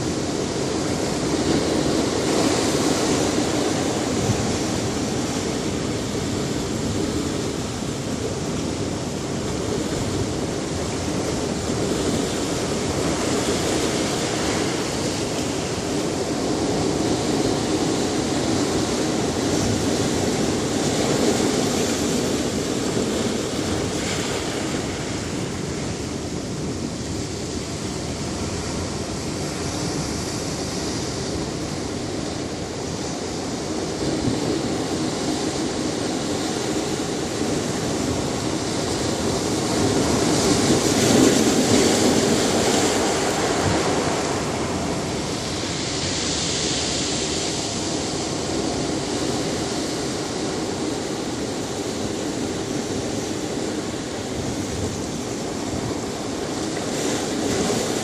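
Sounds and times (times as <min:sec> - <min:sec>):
ocean surf washing onto beach: 0:00.0 - 0:58.0.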